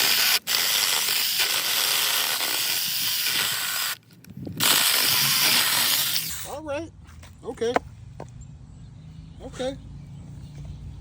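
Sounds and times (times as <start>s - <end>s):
chainsaw cutting wood: 0.0s - 4.0s, 4.6s - 6.3s.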